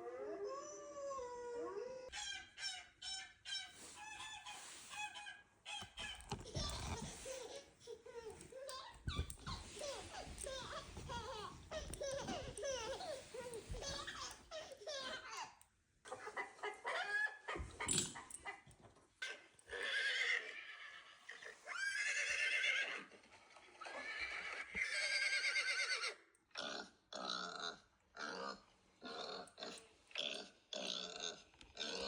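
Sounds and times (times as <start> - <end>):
horse whinnying: 19.7 - 23.2, 23.8 - 26.2.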